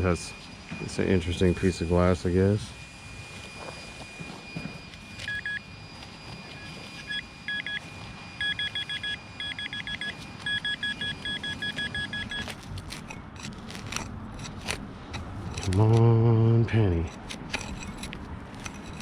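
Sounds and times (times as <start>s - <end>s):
metal detector beeping: 0.0s - 16.1s, 16.7s - 19.0s
digging in soil: 11.6s - 19.0s.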